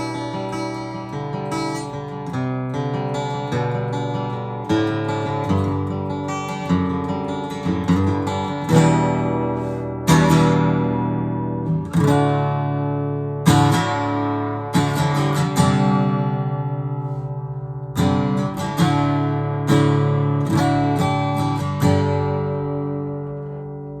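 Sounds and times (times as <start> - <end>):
acoustic guitar strummed chords: 0.0 - 24.0.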